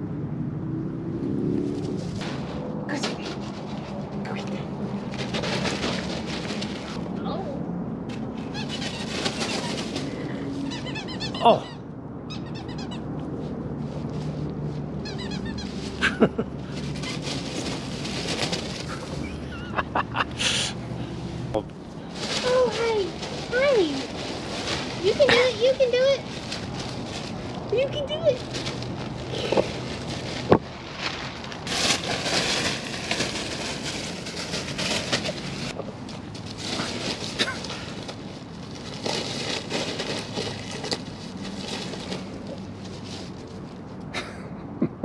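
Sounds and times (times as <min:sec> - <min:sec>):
fabric tunnel rustling: 0:01.7 - 0:07.4, 0:08.1 - 0:11.2, 0:13.8 - 0:19.9, 0:21.9 - 0:43.9
puppy yipping: 0:10.6 - 0:11.7, 0:12.3 - 0:13.1, 0:15.0 - 0:15.9
puppy yelp: 0:10.6 - 0:13.1, 0:15.0 - 0:16.0.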